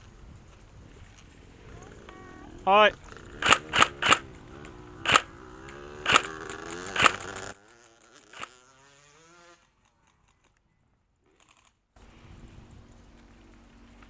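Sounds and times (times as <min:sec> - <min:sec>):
airsoft gun shots: 0:03.4 - 0:04.4, 0:05.0 - 0:05.3, 0:06.0 - 0:07.5.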